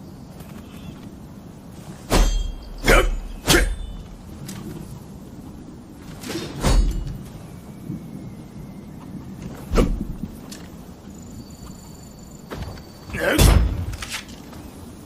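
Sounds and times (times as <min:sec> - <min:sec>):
metallic weapon strikes: 0:02.0 - 0:04.2.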